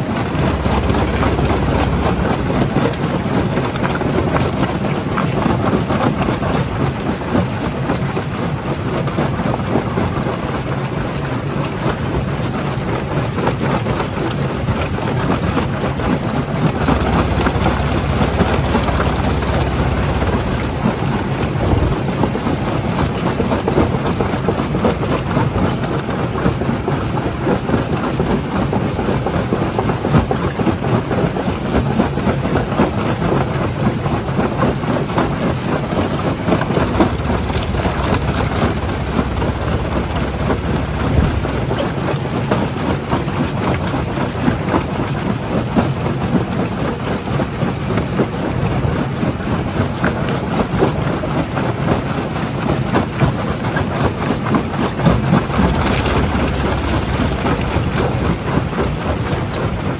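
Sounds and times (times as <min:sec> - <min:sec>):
machinery hum: 0:00.0 - 0:07.8, 0:15.5 - 0:44.5, 0:54.6 - 0:59.9.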